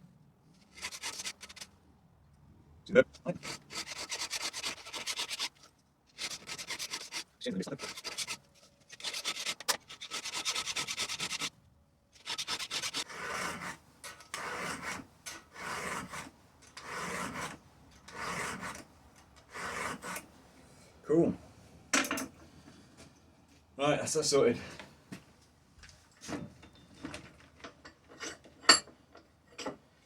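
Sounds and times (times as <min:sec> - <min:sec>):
file rasping on chain: 0:00.7 - 0:01.7, 0:03.3 - 0:11.5, 0:12.2 - 0:18.9, 0:19.5 - 0:20.3.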